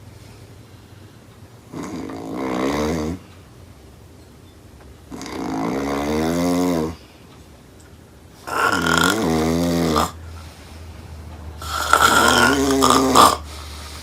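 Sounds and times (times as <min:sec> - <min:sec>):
woman snoring loudly: 0:01.7 - 0:03.2, 0:05.1 - 0:07.0, 0:08.4 - 0:10.2, 0:11.6 - 0:13.6.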